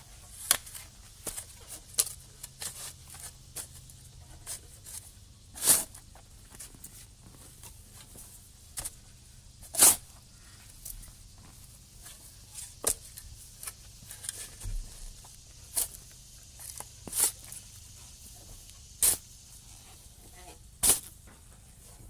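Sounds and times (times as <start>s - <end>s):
tool digging into soil: 5.5s - 6.0s, 9.6s - 10.1s, 15.7s - 17.6s, 18.7s - 20.0s, 20.8s - 21.2s.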